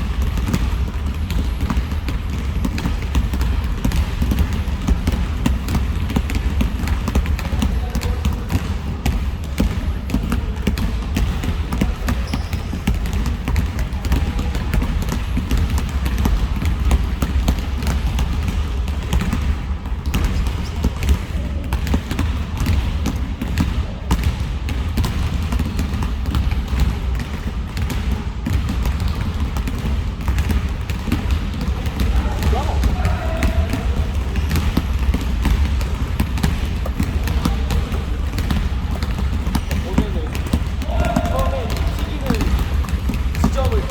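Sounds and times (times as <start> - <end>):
basketballs dribbled on gym floor: 0.0 - 43.9.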